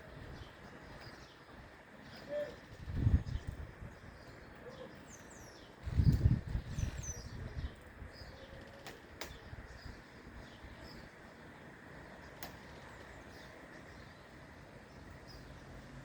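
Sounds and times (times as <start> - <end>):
small birds chirping: 0.0 - 16.0
sharp clicks: 8.7 - 9.4.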